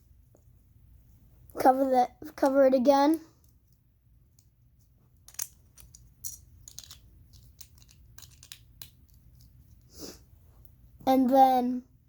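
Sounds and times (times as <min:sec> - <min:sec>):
plastic bricks clicking: 0:05.2 - 0:09.5.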